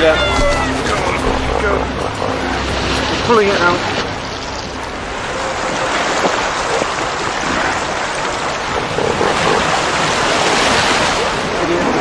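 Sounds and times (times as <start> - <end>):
surf rushing and washing: 0.0 - 12.0
wind buffeting microphone: 4.9 - 12.0.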